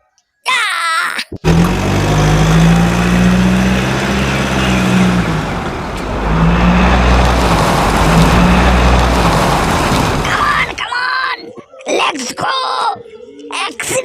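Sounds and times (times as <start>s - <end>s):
vehicle engine running: 1.4s - 10.8s.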